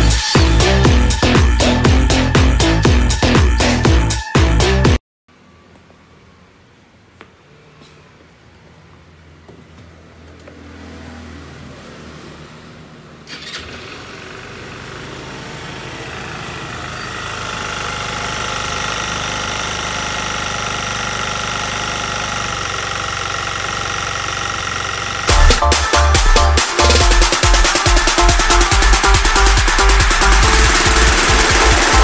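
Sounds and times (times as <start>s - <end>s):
scooter engine running with whine: 0.0s - 4.6s, 12.8s - 32.0s
scooter starter click: 13.3s - 14.2s.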